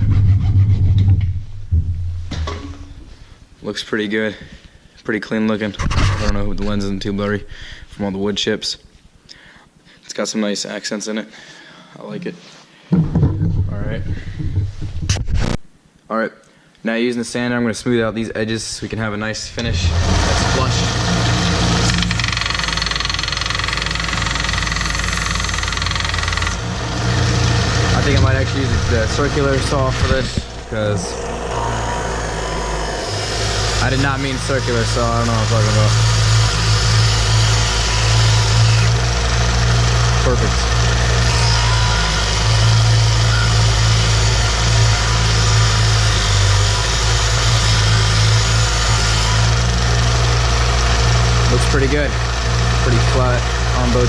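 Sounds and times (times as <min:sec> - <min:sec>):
steady low hum: 0:17.4 - 0:54.0
electric sander on wood: 0:19.6 - 0:54.0.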